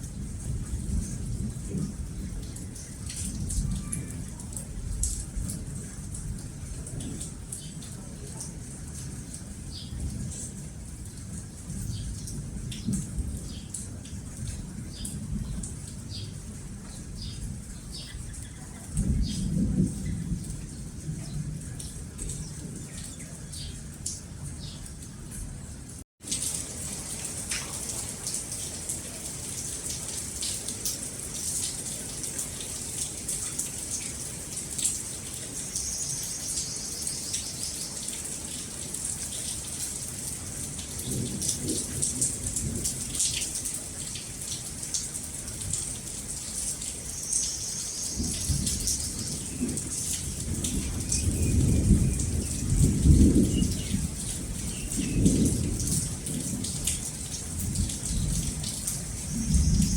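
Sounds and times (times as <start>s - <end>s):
rain falling: 0.0s - 59.9s
rolling thunder: 0.2s - 7.4s, 18.9s - 23.0s, 48.2s - 59.9s.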